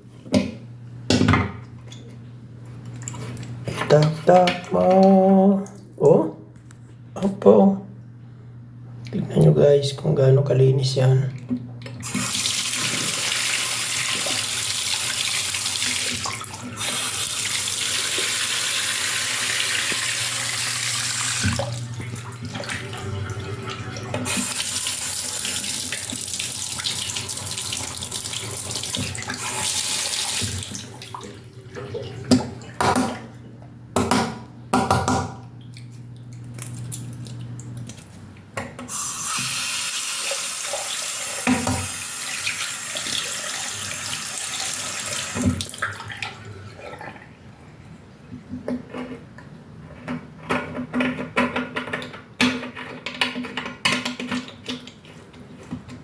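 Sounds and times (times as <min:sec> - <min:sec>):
tap water running into sink: 0:11.6 - 0:33.4, 0:38.9 - 0:47.2.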